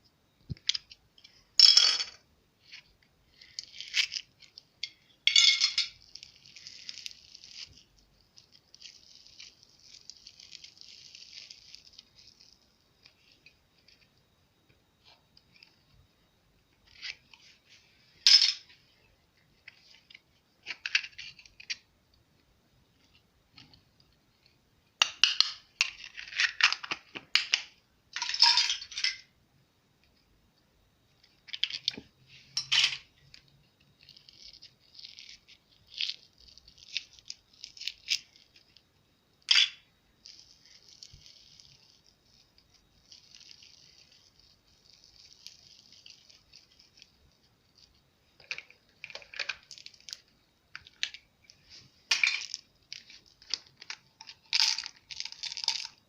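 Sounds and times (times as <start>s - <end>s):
slime crackling and popping: 6.0s - 13.3s.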